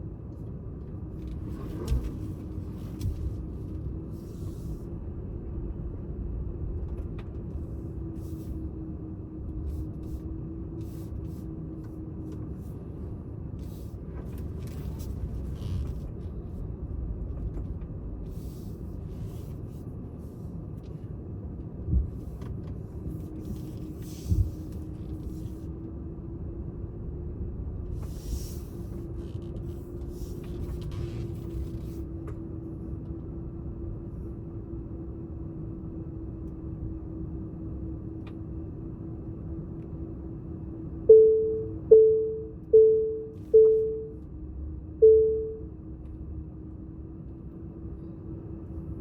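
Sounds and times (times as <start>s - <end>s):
vehicle rumbling on road: 0.0s - 49.0s.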